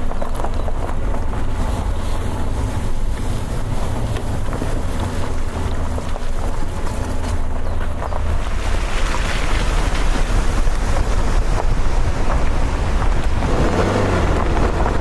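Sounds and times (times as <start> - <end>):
wind buffeting microphone: 0.0 - 15.0.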